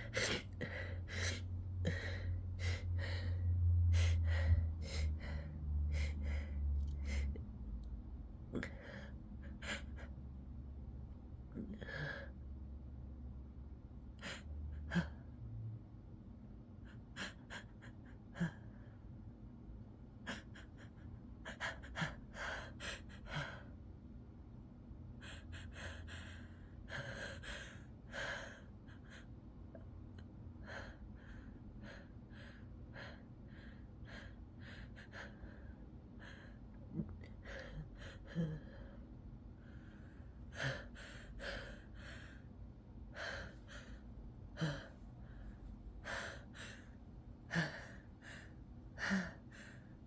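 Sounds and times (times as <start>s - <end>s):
person gasping breaths: 0.0s - 7.4s, 30.6s - 50.0s.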